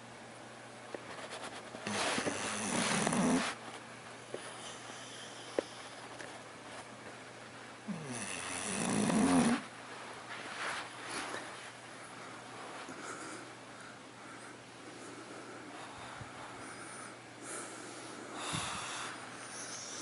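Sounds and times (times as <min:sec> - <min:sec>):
dog snoring: 0:01.8 - 0:03.6, 0:07.9 - 0:09.7
faint breath: 0:11.1 - 0:20.0.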